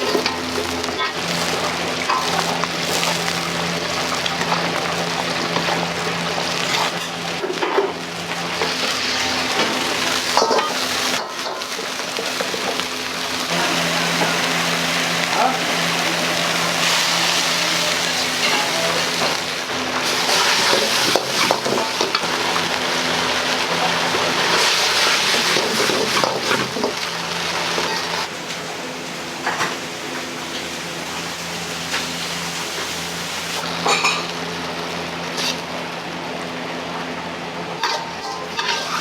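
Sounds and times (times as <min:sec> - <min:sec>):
food sizzling in a wok: 0:00.0 - 0:39.0
ladle scraping a pan: 0:37.8 - 0:39.0.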